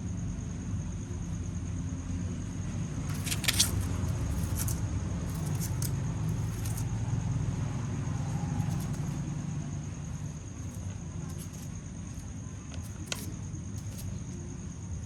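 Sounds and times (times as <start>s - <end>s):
mouse squeaking: 3.1s - 6.9s, 8.6s - 9.2s, 10.5s - 14.4s.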